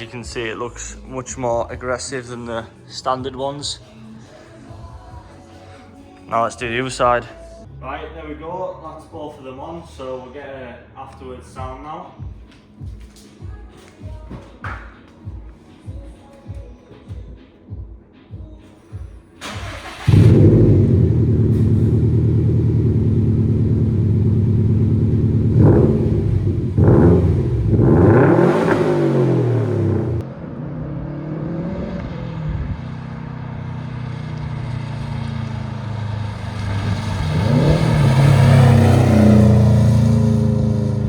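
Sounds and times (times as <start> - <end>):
car engine idling and revving: 19.4 - 41.0.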